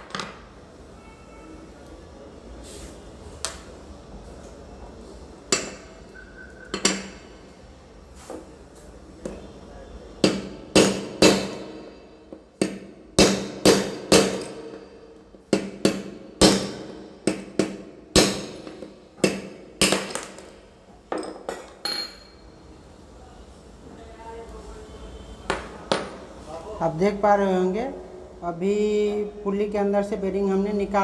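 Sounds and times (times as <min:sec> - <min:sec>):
hammer striking metal: 0:05.5 - 0:06.0, 0:06.7 - 0:07.3, 0:10.2 - 0:20.5.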